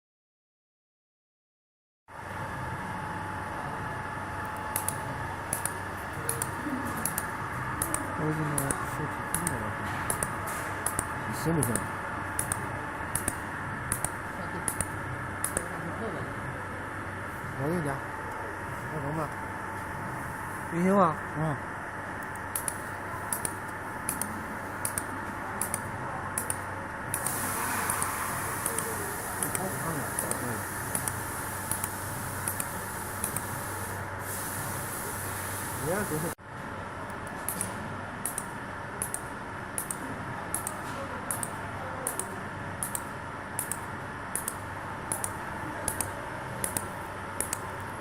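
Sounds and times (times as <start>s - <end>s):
mechanical hum: 2.1s - 48.0s
machine whirring: 2.3s - 36.4s, 37.0s - 48.0s
sharp machine ticks: 4.5s - 15.8s, 22.2s - 34.0s, 37.5s - 47.8s
sharp double clicks: 4.7s - 15.7s, 39.8s - 47.7s.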